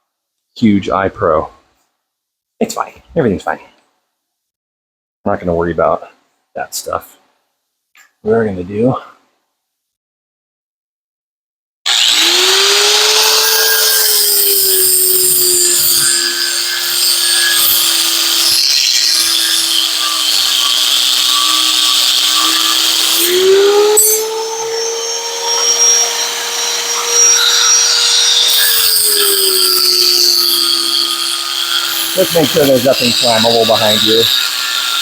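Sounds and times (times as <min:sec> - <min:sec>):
angle grinder cutting metal: 0:11.9 - 0:35.0.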